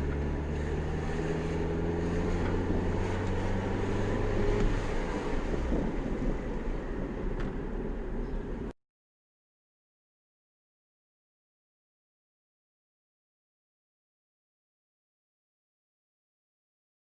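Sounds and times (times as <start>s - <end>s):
car engine running: 0.0s - 8.7s
road noise: 0.0s - 8.8s.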